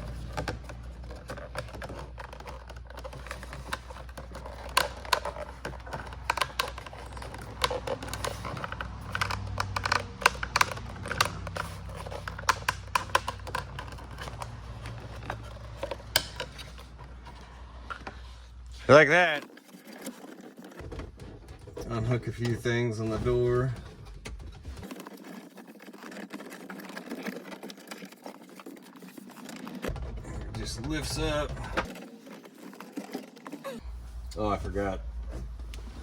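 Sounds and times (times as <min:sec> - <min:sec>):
hand tools clicking on metal: 0:02.4 - 0:16.8.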